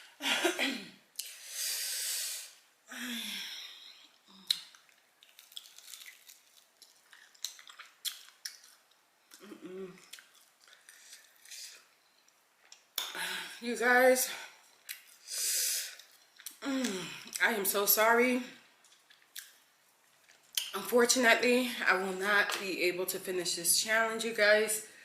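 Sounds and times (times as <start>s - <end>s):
chewing with wet mouth clicks: 4.4s - 9.4s, 10.0s - 11.5s, 16.0s - 16.6s, 18.8s - 20.7s
woman groaning: 16.6s - 17.3s.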